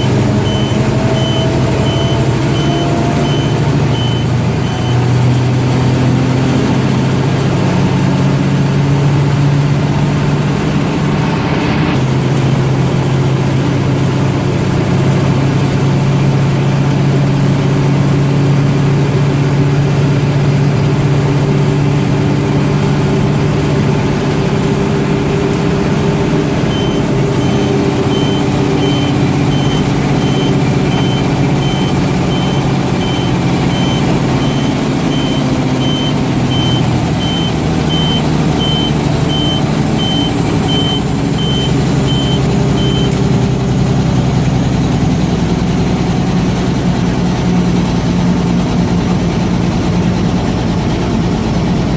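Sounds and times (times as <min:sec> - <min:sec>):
reversing beeper beeps: 0:00.0 - 0:05.1, 0:26.7 - 0:43.2
diesel truck engine running: 0:00.0 - 0:51.9.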